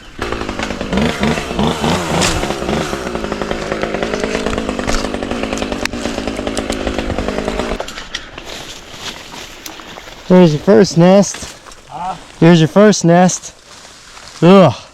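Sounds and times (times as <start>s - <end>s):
chainsaw revving: 0.0s - 7.8s.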